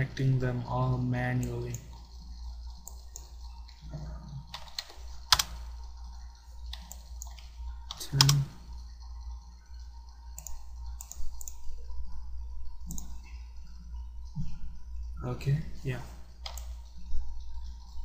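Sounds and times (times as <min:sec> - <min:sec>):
low steady hum: 0:00.0 - 0:18.0
keyboard and mouse clicks: 0:01.4 - 0:09.0, 0:09.7 - 0:11.8, 0:12.8 - 0:13.4, 0:16.4 - 0:18.0.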